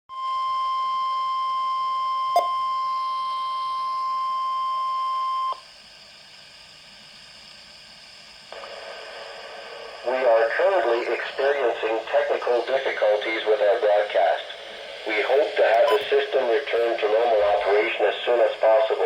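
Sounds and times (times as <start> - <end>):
faint radio hiss: 8.6 - 19.0
high-pitched alarm tone: 15.2 - 18.2.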